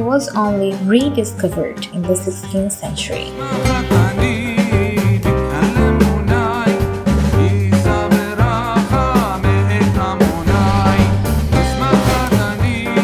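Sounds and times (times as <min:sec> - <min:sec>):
drum beat: 0:03.5 - 0:13.0
bass line: 0:03.6 - 0:12.9.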